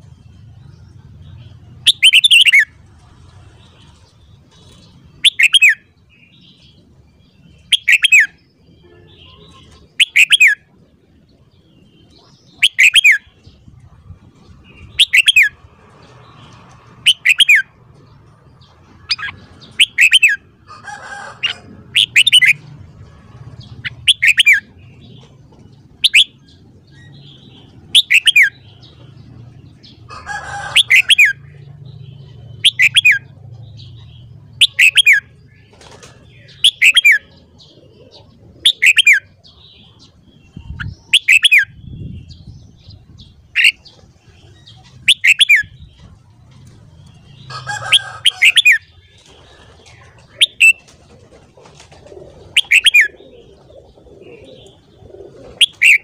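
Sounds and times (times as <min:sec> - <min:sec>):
rough bird call: 0:30.0 - 0:37.4, 0:47.1 - 0:56.0.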